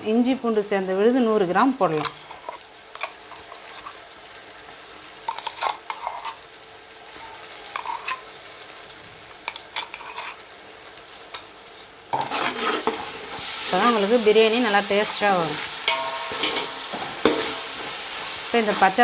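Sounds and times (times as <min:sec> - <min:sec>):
onions sizzling in hot oil: 0:00.0 - 0:19.0
spoon stirring and knocking pot: 0:15.8 - 0:18.0.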